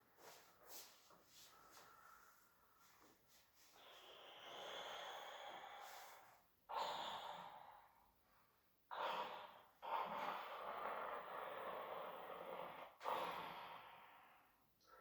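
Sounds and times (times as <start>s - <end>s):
person breathing hard: 0.2s - 8.3s.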